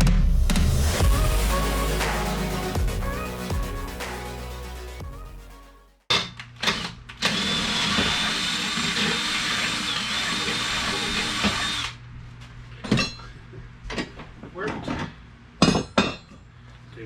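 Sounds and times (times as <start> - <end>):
electric drill drilling: 6.6 - 12.0.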